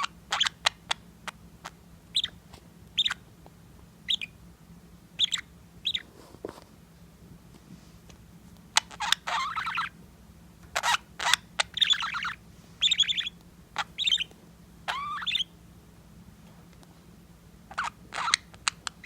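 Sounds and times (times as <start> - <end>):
budgerigar chattering: 0.0 - 1.4, 2.1 - 2.4, 3.0 - 3.2, 4.1 - 4.4, 5.2 - 6.1, 8.7 - 10.0, 10.7 - 14.3, 14.9 - 15.6, 17.7 - 19.0.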